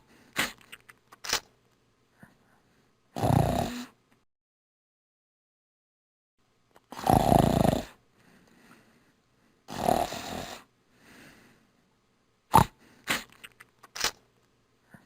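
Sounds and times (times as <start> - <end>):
soft breath: 2.1 - 3.0, 8.1 - 9.7, 10.3 - 12.0
person snoring: 3.2 - 4.0, 6.9 - 8.0, 9.7 - 10.7, 12.5 - 12.8.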